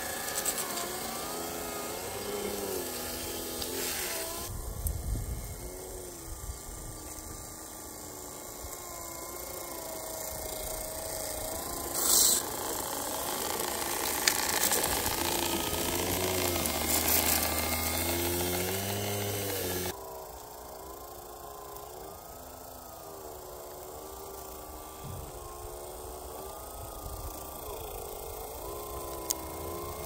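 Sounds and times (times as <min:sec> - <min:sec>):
small electric motors whining: 0:00.0 - 0:30.0
brief hiss: 0:12.0 - 0:12.5.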